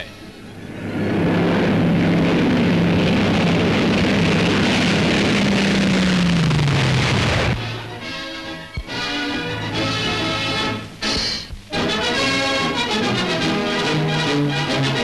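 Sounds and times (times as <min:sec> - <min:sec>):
aircraft engine roar: 0:00.0 - 0:15.0
brass fanfare music: 0:07.6 - 0:15.0.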